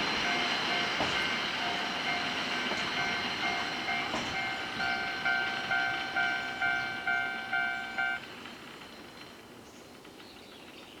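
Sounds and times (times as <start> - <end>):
level-crossing alarm bell ringing: 0.0 - 8.2.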